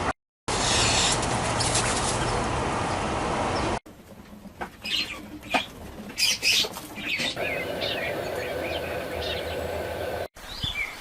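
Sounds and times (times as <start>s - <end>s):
steady outdoor noise: 0.0s - 11.0s
pheasants calling: 4.8s - 10.3s.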